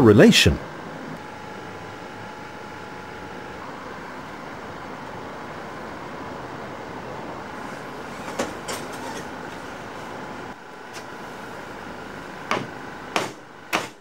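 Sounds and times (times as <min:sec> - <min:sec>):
sharp knocks: 0:12.5 - 0:14.0.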